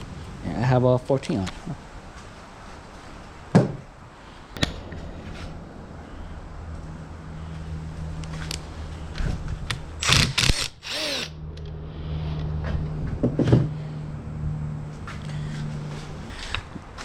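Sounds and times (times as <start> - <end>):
steady low hum: 0.0 - 17.0
power drill driver spinning bolts: 10.0 - 11.3.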